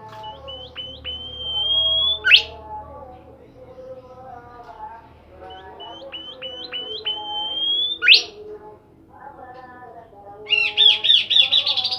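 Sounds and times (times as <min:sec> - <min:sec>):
songbird singing whistles: 0:00.1 - 0:02.6, 0:05.4 - 0:08.4, 0:10.5 - 0:11.9
fast bird trill: 0:00.2 - 0:02.5, 0:05.8 - 0:08.4, 0:10.5 - 0:11.9.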